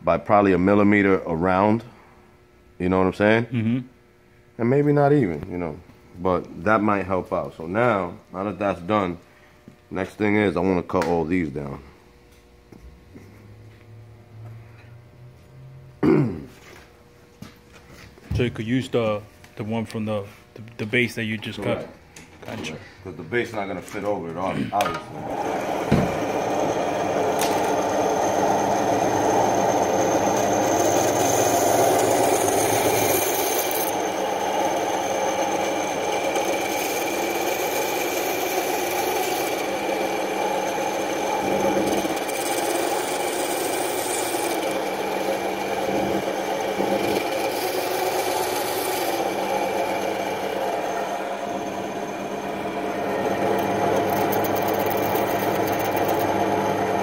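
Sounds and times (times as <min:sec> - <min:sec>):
power tool motor cutting plastic: 0:25.2 - 0:57.0.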